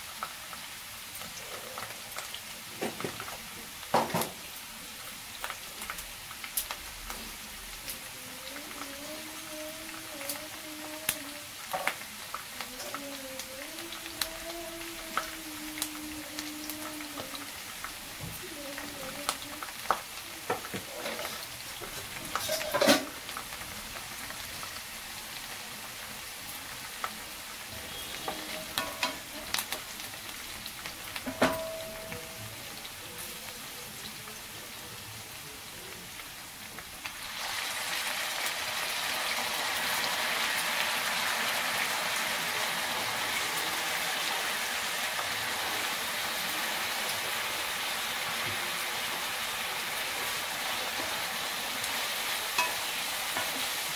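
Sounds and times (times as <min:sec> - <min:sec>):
curry sizzling in a pan: 0:00.0 - 0:53.9
spoon scraping a pan: 0:20.7 - 0:23.1, 0:52.6 - 0:53.7.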